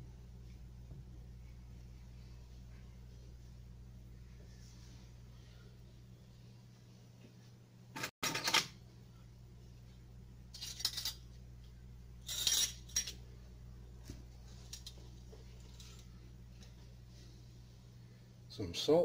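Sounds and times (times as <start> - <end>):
utensils clinking against dishes: 12.2 - 13.2.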